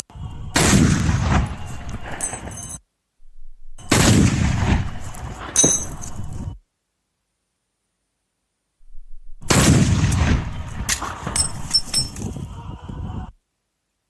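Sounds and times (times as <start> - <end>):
rifle shots: 0.6 - 2.5, 3.7 - 6.4, 9.4 - 11.7.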